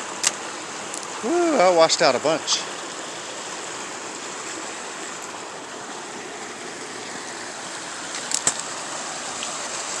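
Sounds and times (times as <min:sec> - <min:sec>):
floodwater rushing through a channel: 0:00.0 - 0:10.0.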